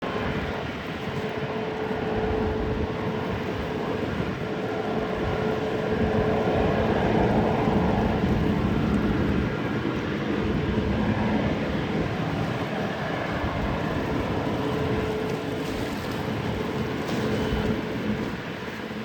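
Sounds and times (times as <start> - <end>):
jet engines rumbling: 0.0 - 19.0.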